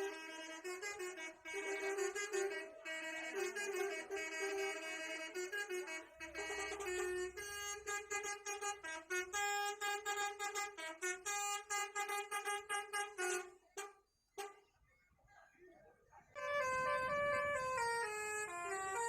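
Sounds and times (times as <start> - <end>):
musical bus air horn: 0.0 - 14.7, 16.4 - 19.0.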